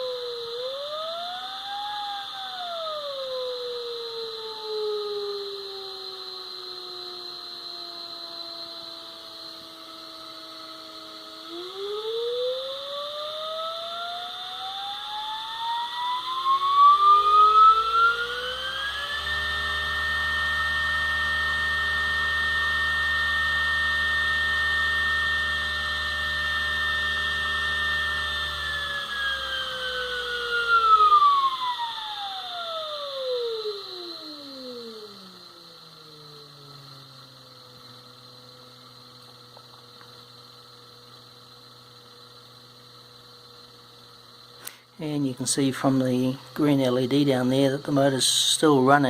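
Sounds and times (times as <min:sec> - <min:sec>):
electric motor whine: 0:00.0 - 0:49.0
steady high tone: 0:14.0 - 0:23.4, 0:44.7 - 0:49.0.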